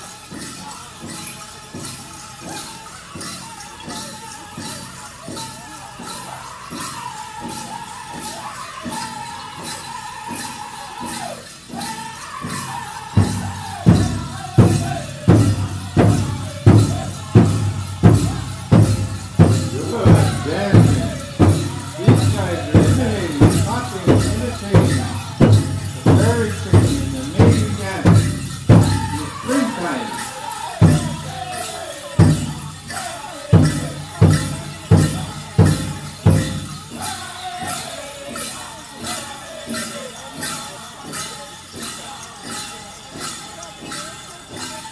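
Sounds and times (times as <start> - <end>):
bells jingling: 0.0 - 44.9
singers' voices: 0.0 - 44.9
heavy beats on large drum: 13.2 - 29.5.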